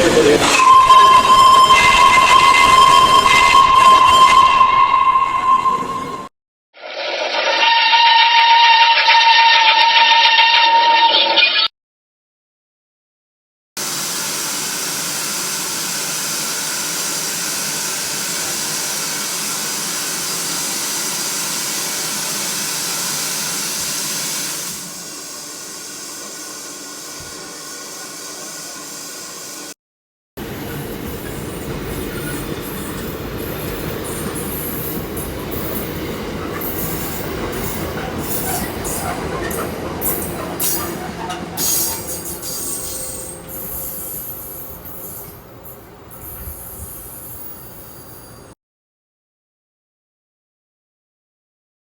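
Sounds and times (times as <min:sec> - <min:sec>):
train rumbling: 0:00.0 - 0:06.3, 0:30.4 - 0:48.5
train running on rails: 0:00.0 - 0:06.3, 0:13.8 - 0:29.7, 0:30.4 - 0:48.5
train wheels squealing: 0:00.5 - 0:06.3, 0:30.6 - 0:48.6.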